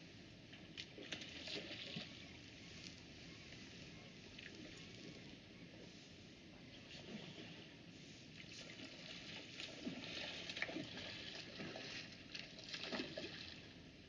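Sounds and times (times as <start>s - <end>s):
river water running: 8.3s - 13.8s
water gurgles and splashes: 8.4s - 13.8s.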